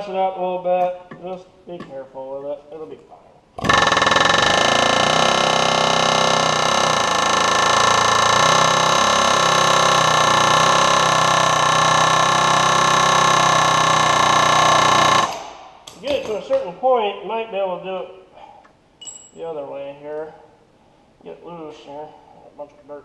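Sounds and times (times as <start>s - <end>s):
power tool high whine: 3.6s - 15.4s.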